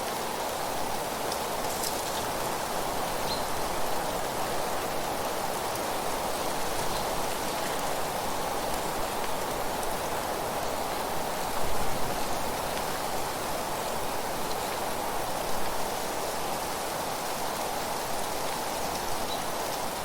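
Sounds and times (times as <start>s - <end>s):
dry leaves rustling: 1.1s - 3.1s.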